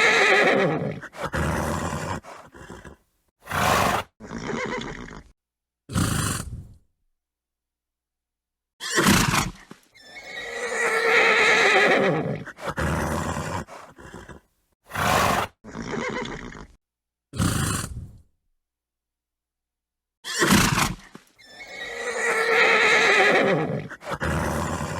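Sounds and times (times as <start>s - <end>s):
horse neighing: 0.0s - 5.3s, 10.0s - 16.8s, 20.2s - 24.9s
horse snorting: 0.0s - 5.3s, 5.9s - 6.8s, 9.0s - 16.8s, 17.4s - 18.2s, 20.3s - 24.9s.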